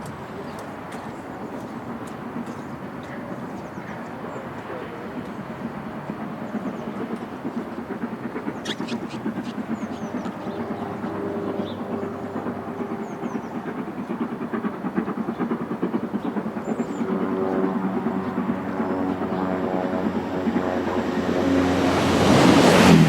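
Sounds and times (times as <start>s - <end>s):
train rumbling and clattering: 0.0s - 23.0s.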